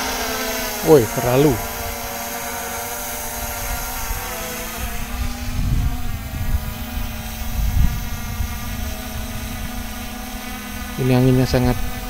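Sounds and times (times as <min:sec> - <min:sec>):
drone propellers whining: 0:00.0 - 0:12.0
wind rumbling on microphone: 0:03.1 - 0:12.0.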